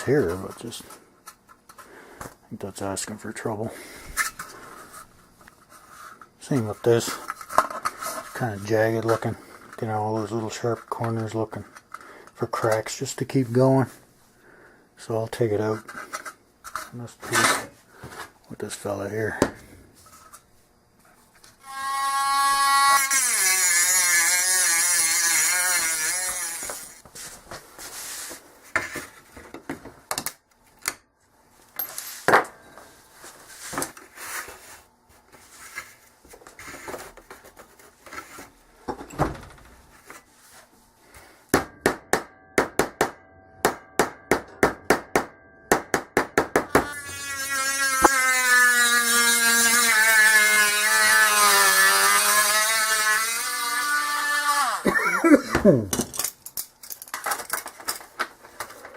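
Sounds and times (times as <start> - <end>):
power tool whining: 21.6 - 27.0, 46.7 - 55.0.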